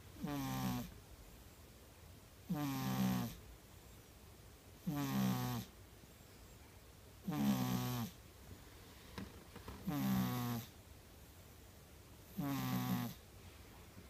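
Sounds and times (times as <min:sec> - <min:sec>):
cat snoring: 0:00.2 - 0:00.9, 0:02.5 - 0:03.4, 0:04.8 - 0:05.7, 0:07.2 - 0:08.2, 0:09.8 - 0:10.7, 0:12.3 - 0:13.2.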